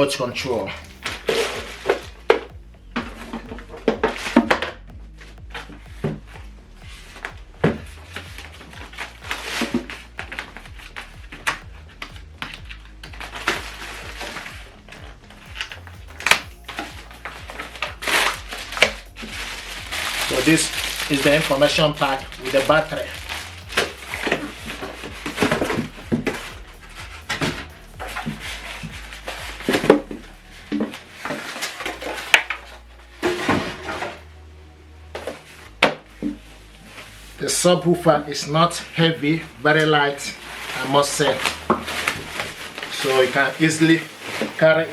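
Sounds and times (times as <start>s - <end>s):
background music with bass: 0.0s - 44.9s
packaging rustling: 38.8s - 44.9s.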